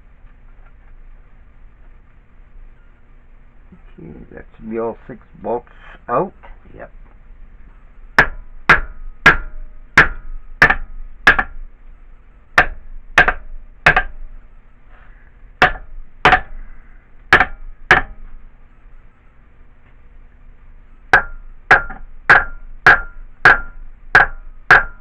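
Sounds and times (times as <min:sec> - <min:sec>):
hammer striking metal: 0:08.2 - 0:11.6, 0:12.6 - 0:14.4, 0:15.6 - 0:16.7, 0:17.3 - 0:18.4, 0:21.1 - 0:25.0.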